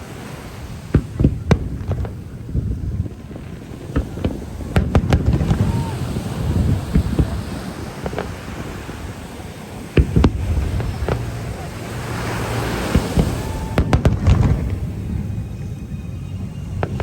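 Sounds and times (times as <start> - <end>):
fireworks bangs: 0.0 - 17.0
wind noise on microphone: 0.0 - 17.0.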